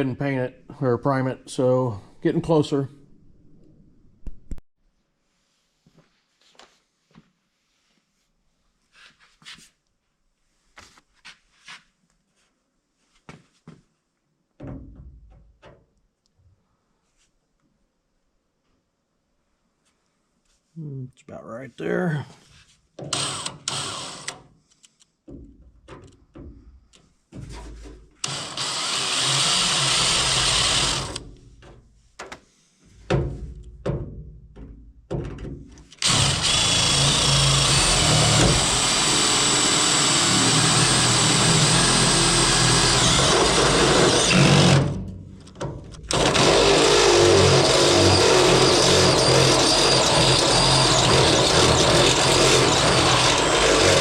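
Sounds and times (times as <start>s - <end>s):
electric drill boring metal: 23.1s - 24.4s, 28.2s - 31.2s, 36.0s - 45.0s, 46.1s - 54.0s.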